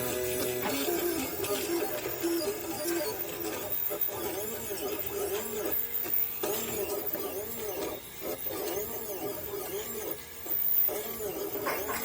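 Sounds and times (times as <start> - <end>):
stepper motors whining: 0.0 - 12.0.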